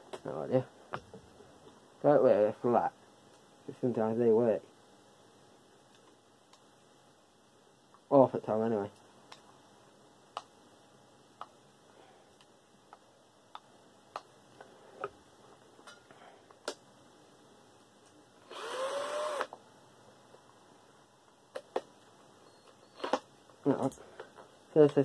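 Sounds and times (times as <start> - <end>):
power drill spinning: 18.4 - 19.6.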